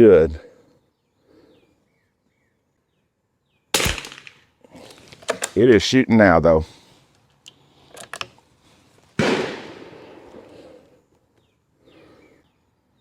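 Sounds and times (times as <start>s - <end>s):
rifle shot: 3.8s - 4.4s, 9.2s - 10.5s.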